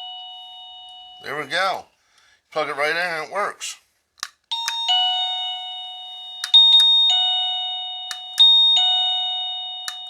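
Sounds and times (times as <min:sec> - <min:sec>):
doorbell ding-dong chime: 0:00.0 - 0:01.4, 0:04.5 - 0:10.0.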